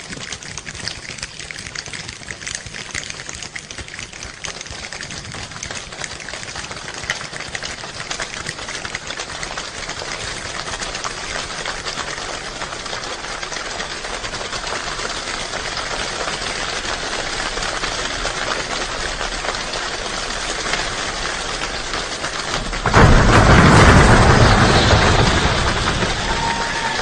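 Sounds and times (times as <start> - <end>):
rain drumming on a roof: 0.0 - 27.0
deep low rumble: 22.5 - 27.0.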